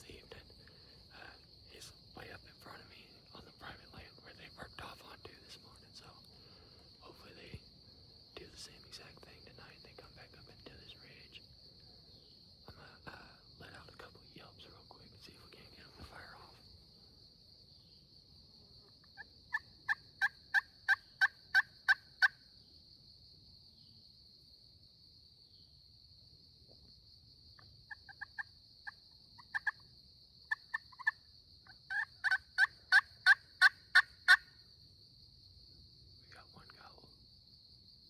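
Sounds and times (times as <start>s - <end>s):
turkey call yelps: 31.9s - 34.5s.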